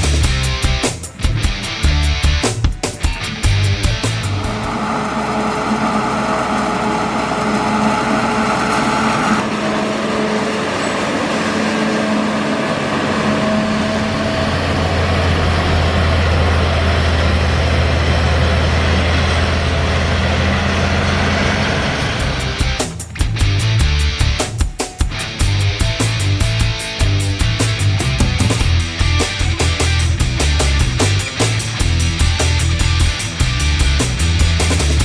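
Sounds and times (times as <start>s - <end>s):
deep drone: 3.2s - 24.5s, 25.3s - 35.0s
diesel engine running under load: 3.3s - 24.4s, 25.4s - 35.0s.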